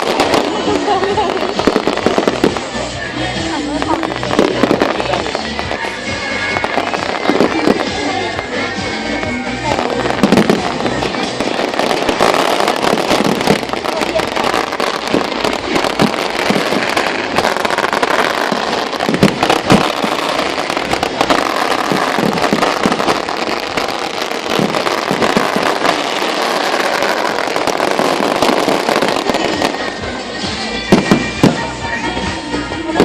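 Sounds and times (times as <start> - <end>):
loud firework booms: 0.0 - 2.8, 9.7 - 30.0, 30.9 - 31.8
fireworks crackling and banging: 0.0 - 33.0.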